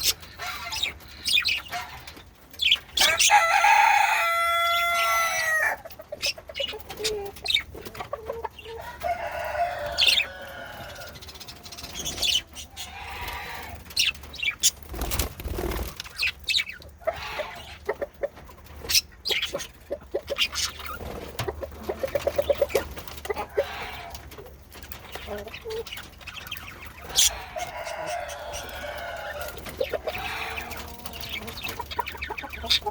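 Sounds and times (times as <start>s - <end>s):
budgerigars chattering: 25.2s - 28.6s.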